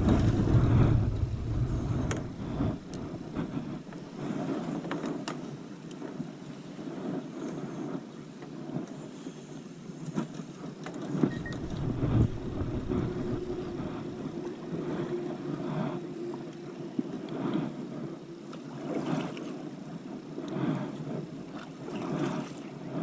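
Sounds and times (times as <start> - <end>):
water sloshing against hull: 0.0 - 23.0
wind on microphone: 0.0 - 23.0.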